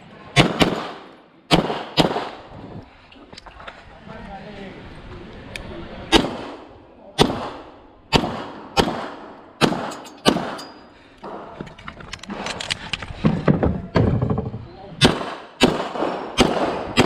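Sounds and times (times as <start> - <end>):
pistol shots with echo: 0.4 - 2.4, 6.1 - 11.5, 15.0 - 17.0.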